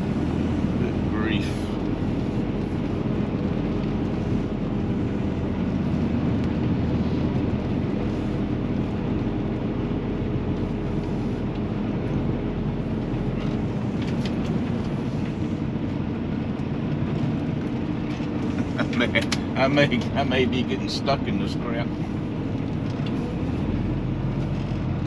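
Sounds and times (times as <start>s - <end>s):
diesel truck engine running: 0.0s - 25.0s.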